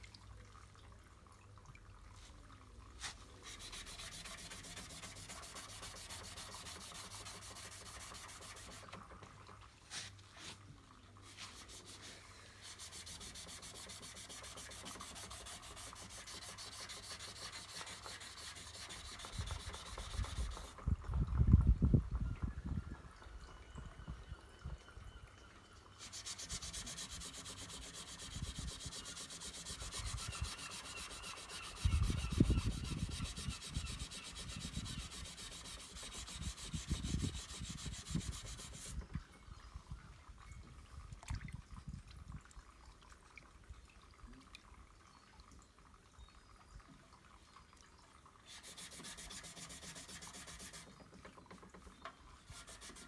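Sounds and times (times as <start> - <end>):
sandpaper rasping on filler: 3.0 - 9.0, 11.3 - 20.8, 26.0 - 39.0, 48.5 - 51.0, 52.5 - 53.0.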